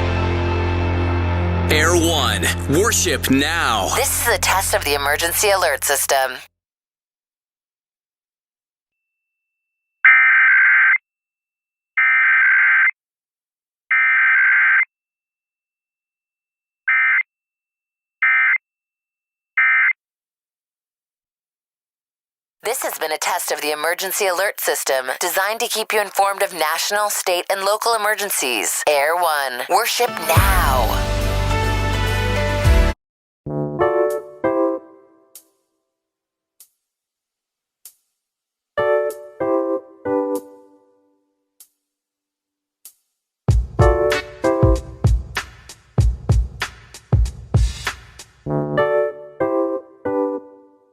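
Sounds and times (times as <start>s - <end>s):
keyboard chords ringing: 33.7s - 35.2s, 48.5s - 50.8s.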